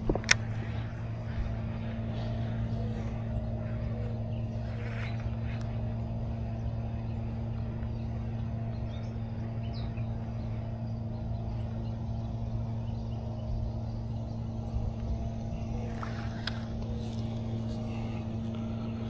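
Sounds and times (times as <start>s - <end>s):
low mechanical hum: 0.0s - 19.0s.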